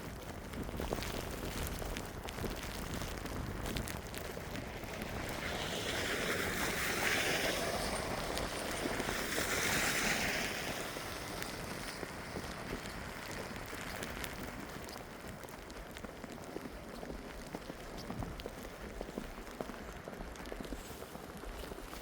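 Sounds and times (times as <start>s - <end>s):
footsteps crunching through snow: 0.1s - 22.0s
broad hissing noise: 5.0s - 15.2s.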